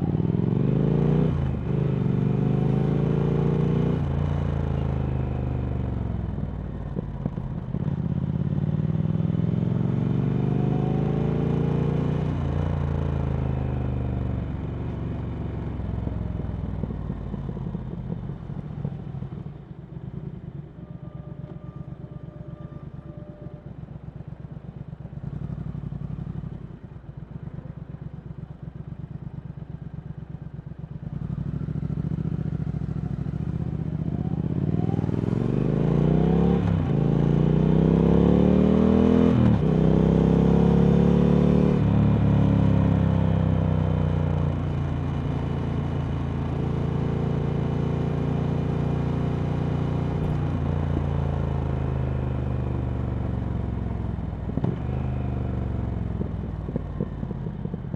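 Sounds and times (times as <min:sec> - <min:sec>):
motorcycle engine accelerating: 0:25.1 - 0:57.9.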